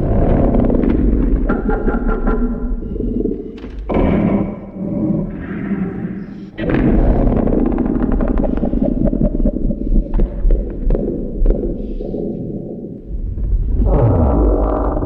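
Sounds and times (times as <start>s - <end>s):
deep creature growl: 13.1s - 15.0s.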